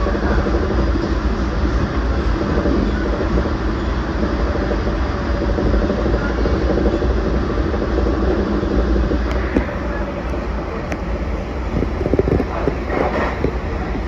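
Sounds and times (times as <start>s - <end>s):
train wheels rumbling on rails: 0.0s - 14.0s.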